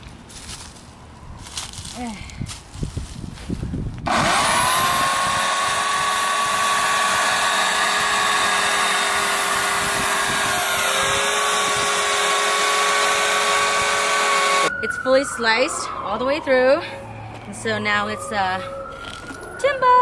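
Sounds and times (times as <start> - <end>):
chainsaw cutting wood: 4.1 - 14.7.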